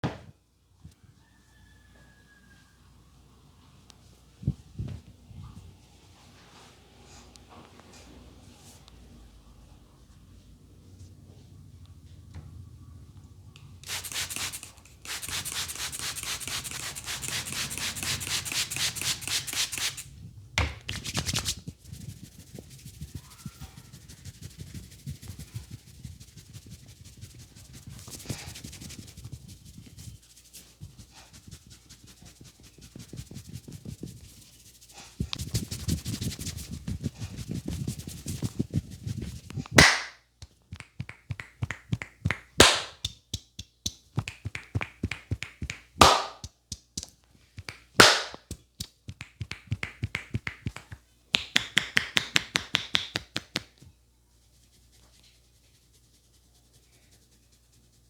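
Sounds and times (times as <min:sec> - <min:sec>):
hands rubbing hair and scalp: 0:13.8 - 0:20.1, 0:20.8 - 0:53.8, 0:54.6 - 0:58.0.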